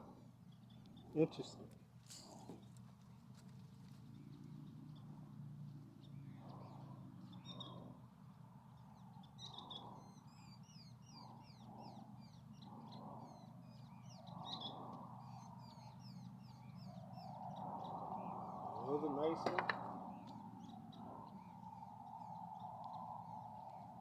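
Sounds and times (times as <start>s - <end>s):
harsh bird calls: 9.2s - 23.9s.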